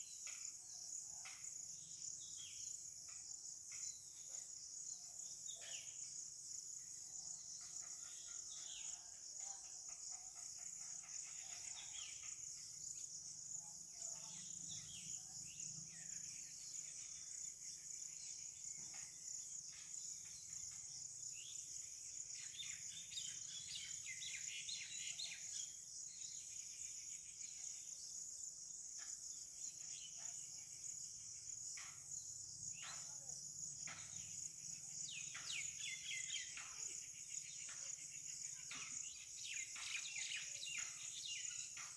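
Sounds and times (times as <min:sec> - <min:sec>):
bird chirps: 0:14.0 - 0:27.9, 0:32.7 - 0:41.9.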